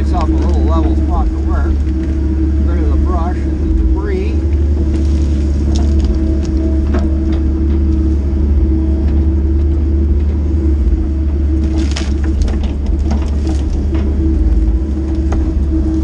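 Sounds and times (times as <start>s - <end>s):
branches cracking and scraping: 0.0s - 8.1s, 11.4s - 16.0s
diesel engine running: 0.0s - 16.0s.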